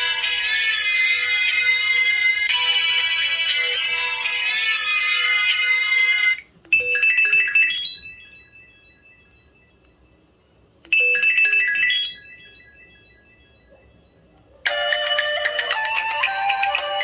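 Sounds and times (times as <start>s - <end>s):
phone ringtone: 0.0s - 10.3s, 10.9s - 17.0s.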